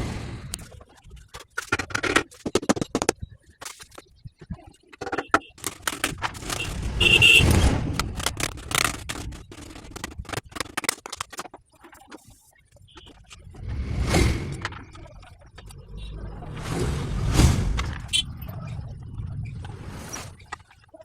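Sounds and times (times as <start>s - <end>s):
rumbling scrape: 5.7s - 10.5s, 13.4s - 20.5s
handling clicks and knocks: 8.0s - 11.6s.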